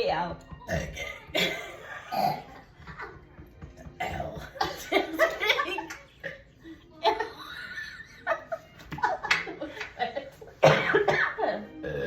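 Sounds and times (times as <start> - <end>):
people laughing: 4.6 - 10.6.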